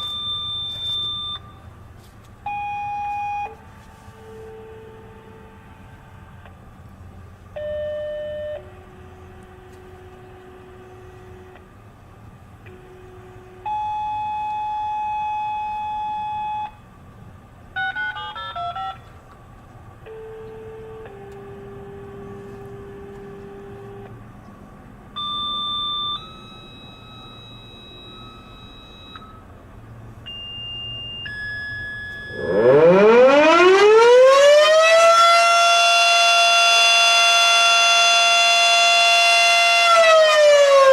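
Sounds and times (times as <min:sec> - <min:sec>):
touch-tone beeps: 0:00.0 - 0:01.7, 0:25.2 - 0:29.4
mechanical fire siren winding up: 0:31.3 - 0:40.9.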